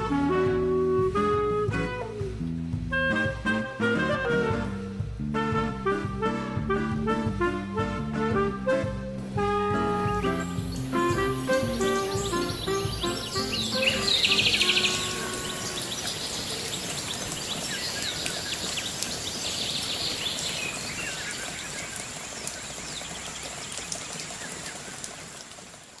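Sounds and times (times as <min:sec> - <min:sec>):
held music notes: 0:00.0 - 0:17.0
outdoor background hiss: 0:00.0 - 0:26.0
birds chirping and trilling: 0:10.0 - 0:25.1.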